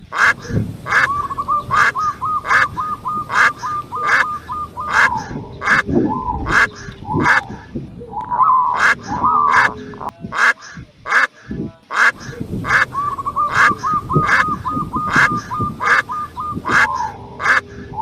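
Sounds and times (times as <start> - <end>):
fast chirping trill: 0.0 - 7.6, 12.0 - 17.8
sharp animal calls: 0.0 - 18.0
warbling calls: 0.0 - 18.0.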